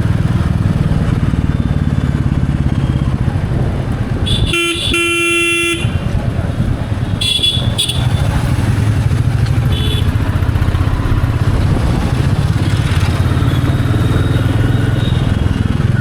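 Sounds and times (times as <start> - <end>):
motorcycle engine running: 0.0 - 16.0
horn toot: 4.2 - 6.1, 7.1 - 8.3, 9.7 - 10.1.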